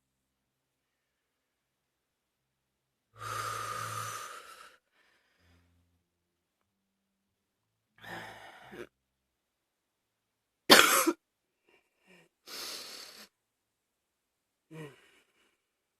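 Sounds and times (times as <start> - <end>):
breathy sounds: 3.2 - 6.0, 8.0 - 9.0
woman coughing: 10.7 - 11.2.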